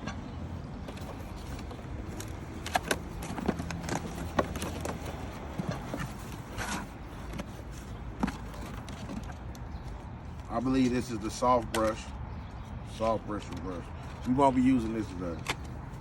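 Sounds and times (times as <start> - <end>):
clicks and knocks of handling: 0.0 - 10.5, 11.6 - 12.1, 15.3 - 15.8.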